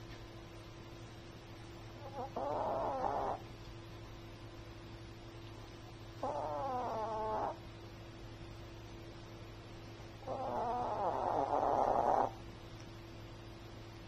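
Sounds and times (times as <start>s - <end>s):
dog snoring: 2.0s - 3.4s, 6.2s - 7.6s, 10.2s - 12.4s.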